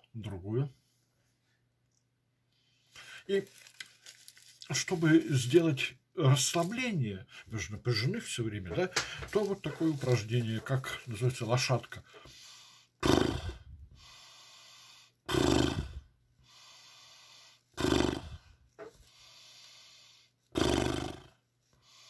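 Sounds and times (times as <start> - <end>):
man doing lip trills: 15.3 - 16.0, 20.5 - 21.3.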